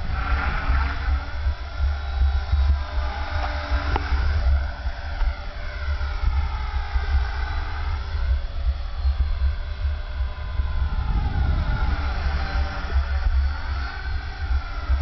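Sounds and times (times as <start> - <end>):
rc helicopter rotor whine: 0.0 - 15.0
steady low drone: 0.0 - 15.0.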